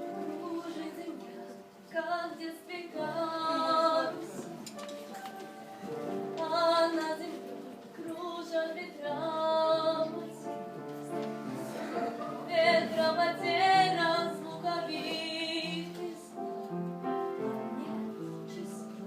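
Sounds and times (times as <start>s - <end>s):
woman singing with vibrato: 0.0s - 4.5s, 5.1s - 10.6s, 12.3s - 16.4s
sustained musical accompaniment: 0.0s - 19.0s.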